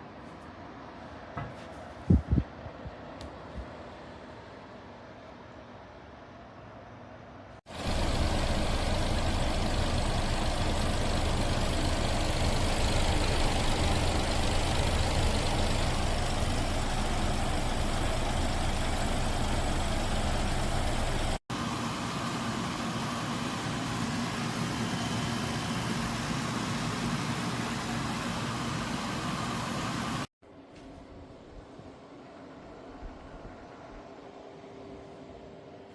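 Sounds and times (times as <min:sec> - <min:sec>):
air conditioner hum and airflow: 0:00.0 - 0:07.6.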